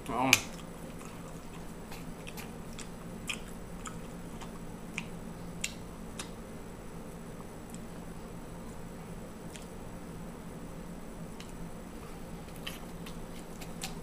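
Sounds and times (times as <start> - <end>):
steady low hum: 0.0 - 14.0
person chewing food: 0.1 - 6.4, 9.4 - 9.8, 11.4 - 14.0.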